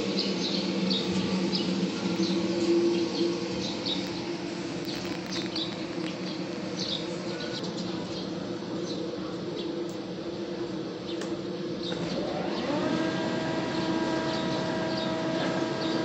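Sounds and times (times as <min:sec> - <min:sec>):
planer machine hum: 0:11.9 - 0:16.0.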